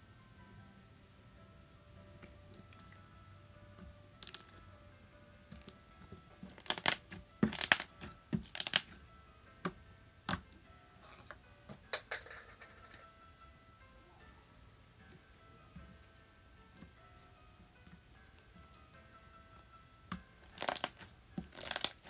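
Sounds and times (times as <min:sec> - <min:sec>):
soft background music: 0:00.0 - 0:22.0
slime squished by hand: 0:06.4 - 0:09.0, 0:20.4 - 0:22.0.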